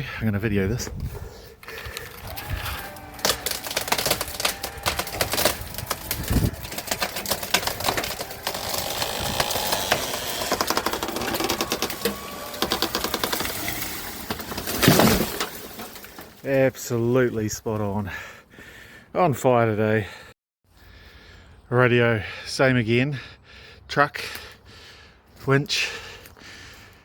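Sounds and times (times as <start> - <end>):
wood crackling and popping: 1.6 - 17.0
tree crashing to the ground: 2.1 - 16.7.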